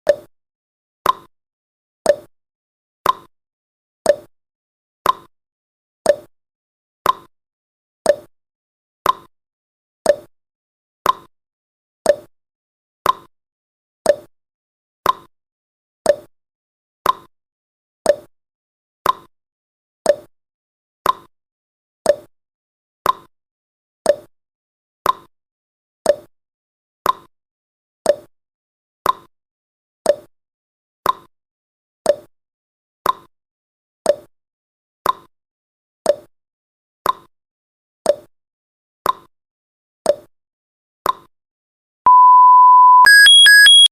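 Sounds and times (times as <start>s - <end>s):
countdown timer ticks: 42.1s - 43.9s.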